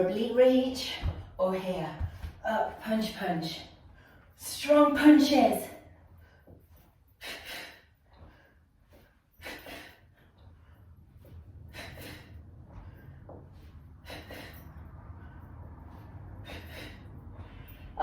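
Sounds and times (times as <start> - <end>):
low steady hum: 0.0 - 18.0
woman breathing hard: 6.0 - 18.0.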